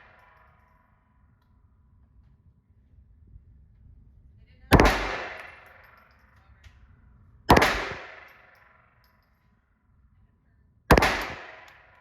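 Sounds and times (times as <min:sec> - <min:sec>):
pistol shots with echo: 0:04.7 - 0:06.2, 0:07.5 - 0:08.9, 0:10.9 - 0:12.0.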